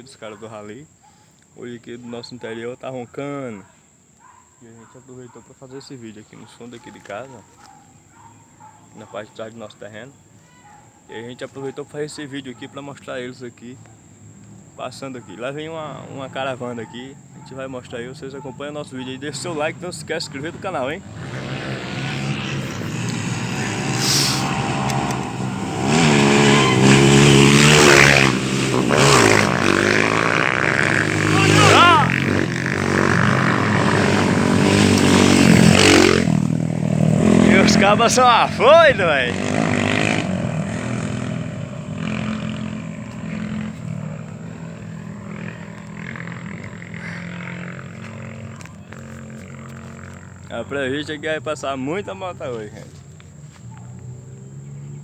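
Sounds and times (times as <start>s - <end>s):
motorcycles revving past: 15.6s - 52.7s, 53.5s - 55.0s.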